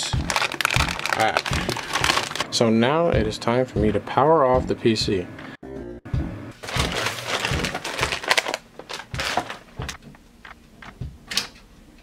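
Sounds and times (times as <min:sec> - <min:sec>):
rustling and clattering: 0:00.3 - 0:02.5, 0:06.6 - 0:11.0.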